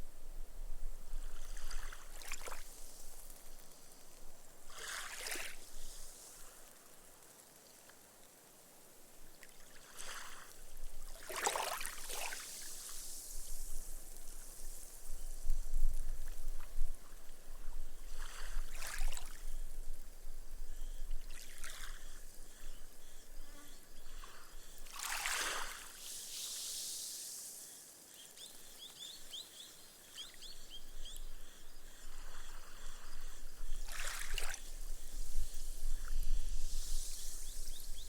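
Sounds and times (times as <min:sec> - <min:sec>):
ripples washing up sand: 0:01.2 - 0:07.8, 0:09.4 - 0:20.1, 0:21.2 - 0:22.4, 0:24.2 - 0:29.0, 0:32.1 - 0:38.0.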